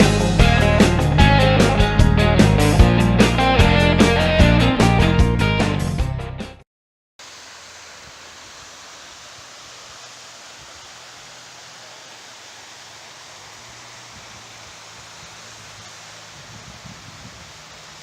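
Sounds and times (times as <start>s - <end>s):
waterfall rushing: 7.2s - 18.0s.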